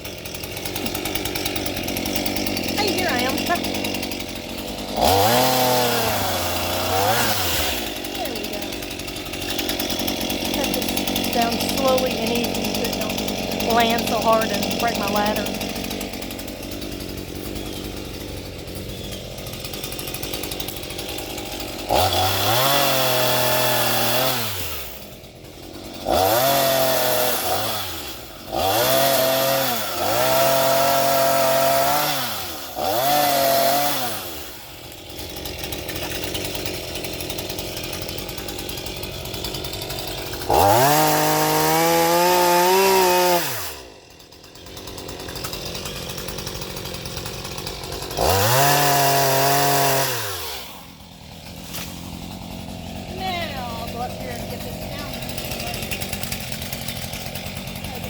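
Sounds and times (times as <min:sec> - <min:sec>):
chainsaw revving and idling: 0:00.0 - 0:58.0.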